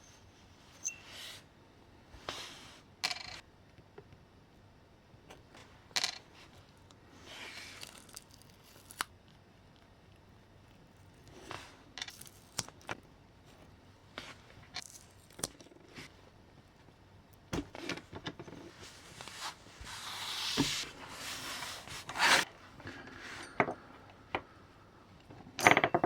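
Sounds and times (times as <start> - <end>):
scraping and rustling: 17.8 - 23.6.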